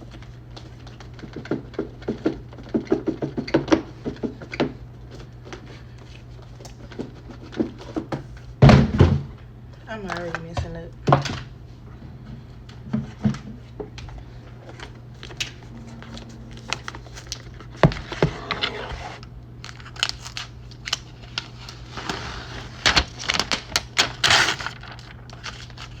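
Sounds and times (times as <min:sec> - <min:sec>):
steady low hum: 0:00.0 - 0:26.0
packaging rustling: 0:14.2 - 0:26.0
wrapping crinkling and tearing: 0:14.6 - 0:17.8, 0:19.6 - 0:26.0.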